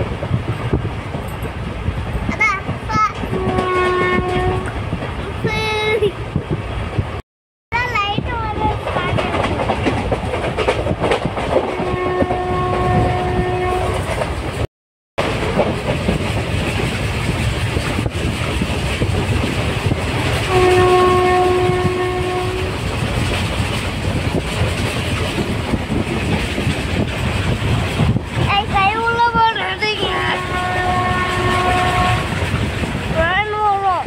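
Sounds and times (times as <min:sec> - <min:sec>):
train rumbling on track: 0:00.0 - 0:34.0
train horn blasts: 0:03.3 - 0:04.8, 0:11.7 - 0:14.1, 0:20.4 - 0:22.8, 0:30.0 - 0:32.4.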